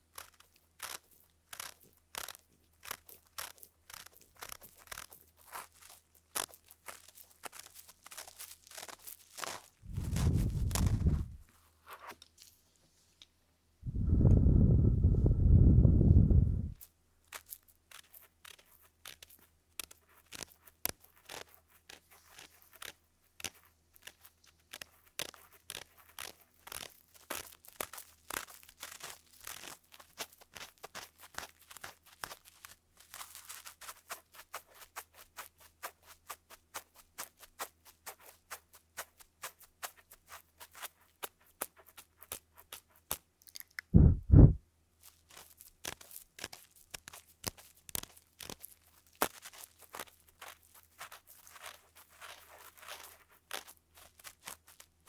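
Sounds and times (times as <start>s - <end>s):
scratching in microphone ear: 9.8s - 11.4s, 13.9s - 16.8s, 44.0s - 44.6s
deep thumps: 9.9s - 11.4s, 44.0s - 44.6s.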